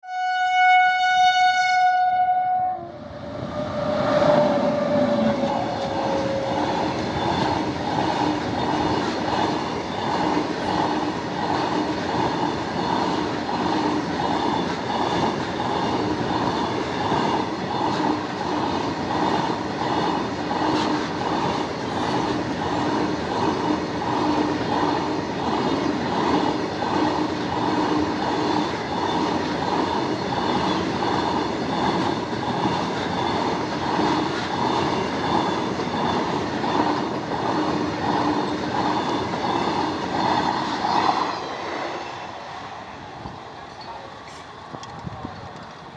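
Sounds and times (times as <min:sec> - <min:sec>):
locomotive horn blaring: 0:00.0 - 0:03.0, 0:04.4 - 0:07.0
freight train rumbling past: 0:00.1 - 0:45.9
wheels clickety-clack on rail joints: 0:03.7 - 0:45.9.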